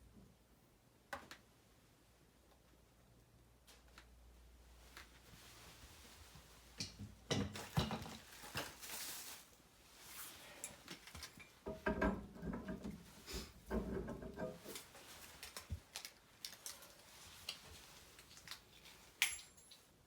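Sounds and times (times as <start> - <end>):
metal parts clinking and knocking: 18.8 - 19.9.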